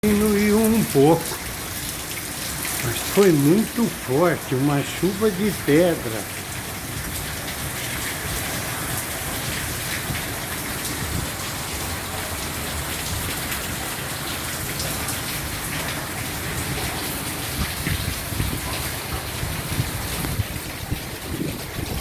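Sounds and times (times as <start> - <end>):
hail ticking: 0.0 - 12.0
heavy rain: 0.0 - 22.0
wind on microphone: 9.9 - 11.6, 17.5 - 22.0.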